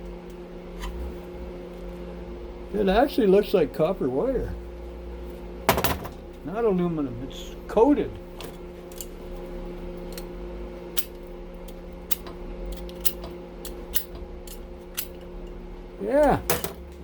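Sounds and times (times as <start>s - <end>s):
steady electrical hum: 0.0s - 17.0s
hand tool clicks and scrapes: 12.1s - 15.2s.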